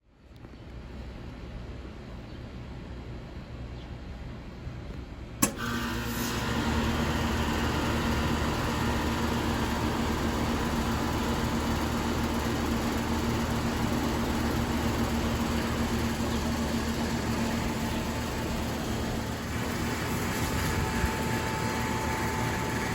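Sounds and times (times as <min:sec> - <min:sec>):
heat pump running with hum: 0:00.1 - 0:22.9
heat pump switch click: 0:05.4 - 0:06.1.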